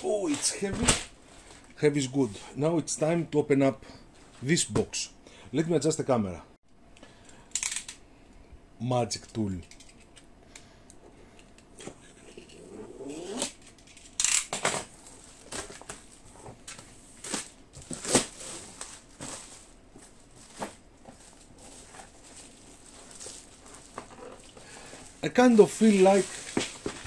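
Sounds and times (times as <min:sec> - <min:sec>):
cardboard rustling: 0:14.9 - 0:27.0.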